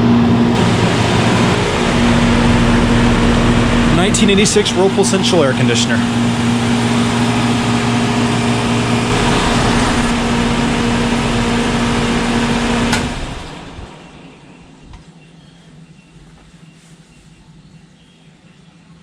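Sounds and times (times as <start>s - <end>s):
condenser fan rushing: 0.0s - 17.0s
air conditioner compressor humming: 0.0s - 17.9s
air conditioner switch click: 6.9s - 14.0s.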